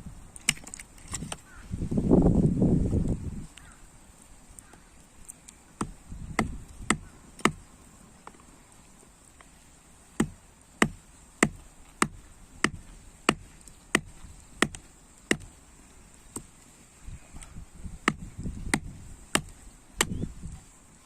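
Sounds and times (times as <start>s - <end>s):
sharp chopping strokes: 5.8s - 7.7s, 10.2s - 15.6s, 17.9s - 20.6s.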